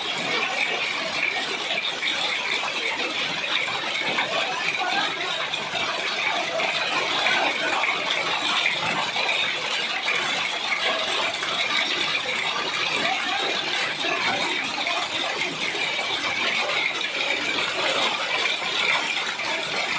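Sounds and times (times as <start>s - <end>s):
hail clattering on hard surfaces: 0.0s - 19.9s.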